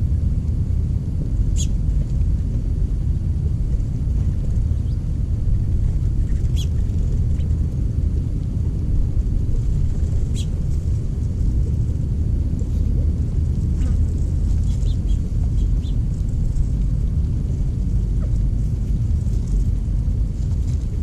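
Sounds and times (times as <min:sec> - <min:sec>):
low rumble: 0:00.0 - 0:21.0
high bird chirps: 0:06.5 - 0:06.8, 0:14.6 - 0:16.0.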